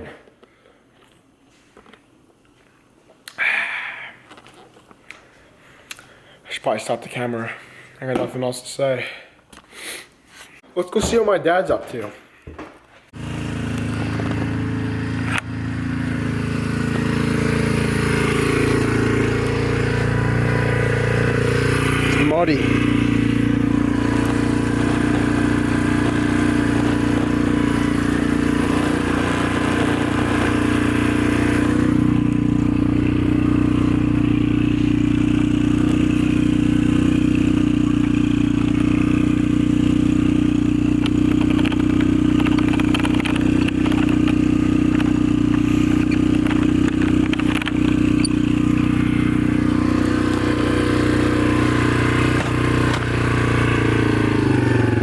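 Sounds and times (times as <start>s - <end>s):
engine running steadily: 13.2s - 55.0s.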